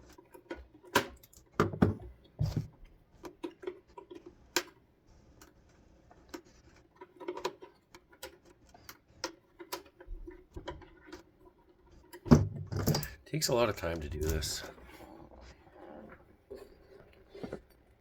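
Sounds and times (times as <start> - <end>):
tools and plastic parts clicking: 3.2 - 4.8, 6.3 - 13.2.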